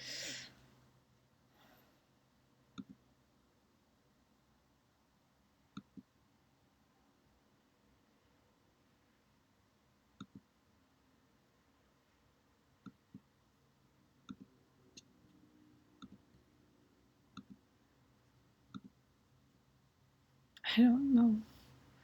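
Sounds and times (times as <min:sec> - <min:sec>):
computer mouse clicks: 0:02.7 - 0:03.0, 0:05.7 - 0:06.1, 0:10.2 - 0:10.5, 0:14.2 - 0:15.1, 0:16.0 - 0:16.4, 0:17.3 - 0:17.6, 0:18.7 - 0:19.0.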